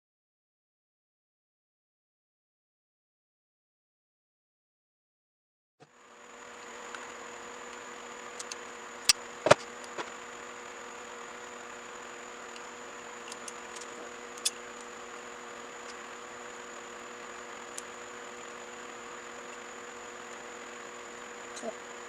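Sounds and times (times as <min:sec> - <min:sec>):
mechanical hum with high whine: 0:05.8 - 0:22.0.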